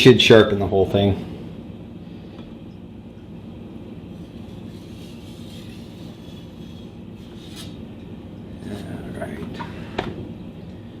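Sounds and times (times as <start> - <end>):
blade scraping on whetstone: 4.2 - 7.8.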